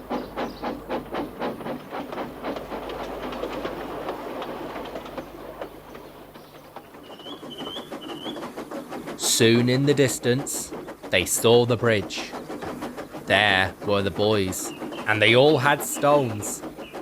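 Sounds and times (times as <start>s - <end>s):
bird chirping: 0.0s - 1.4s, 5.0s - 8.4s
steam locomotive exhaust chuffs: 0.0s - 17.0s
wheels clacking on rail joints: 0.0s - 17.0s.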